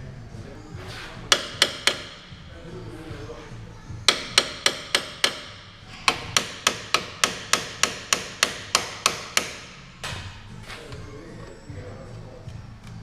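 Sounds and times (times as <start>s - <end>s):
hammer striking metal: 1.3s - 2.5s, 4.1s - 10.4s.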